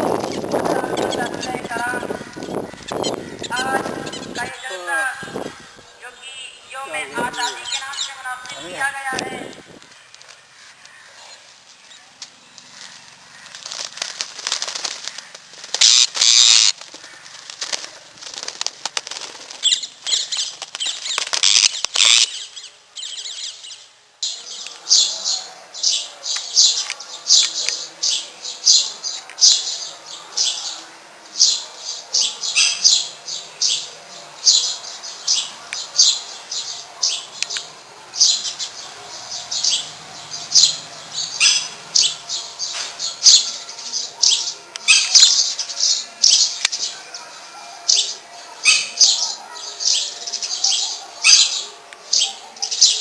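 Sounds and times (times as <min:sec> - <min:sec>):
birds flapping wings: 0:09.4 - 0:22.2.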